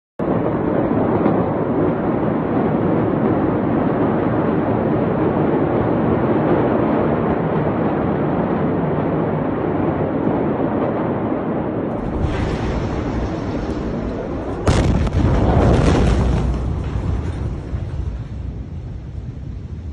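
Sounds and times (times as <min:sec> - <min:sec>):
steady rushing noise: 0:00.2 - 0:19.9
heavy low rumble: 0:11.7 - 0:19.9
explosion crack: 0:11.9 - 0:19.9.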